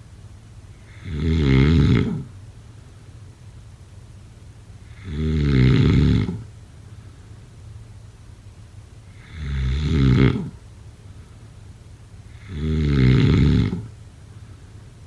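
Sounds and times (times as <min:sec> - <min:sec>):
person snoring: 0:00.8 - 0:02.3, 0:04.9 - 0:06.4, 0:09.1 - 0:10.6, 0:12.4 - 0:13.9.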